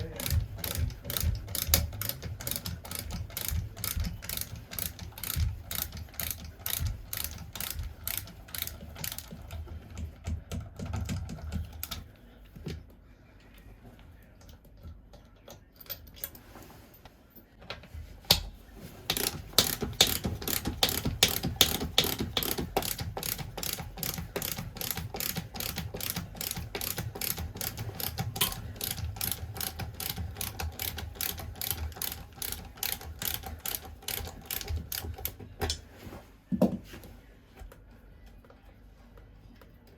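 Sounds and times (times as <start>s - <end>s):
ratchet clicking: 0.2s - 10.0s, 19.1s - 35.4s.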